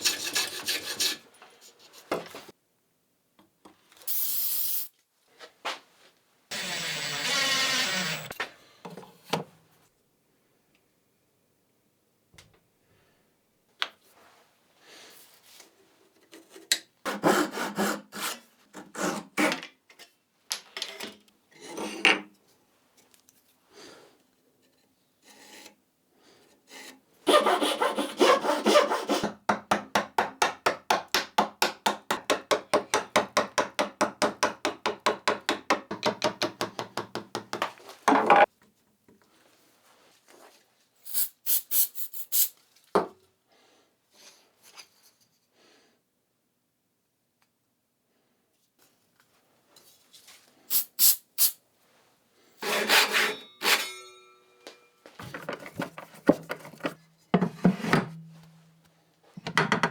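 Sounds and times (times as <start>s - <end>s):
hand saw cutting wood: 0.0s - 1.3s, 6.5s - 8.4s, 17.0s - 19.6s, 26.8s - 29.4s, 52.6s - 54.0s.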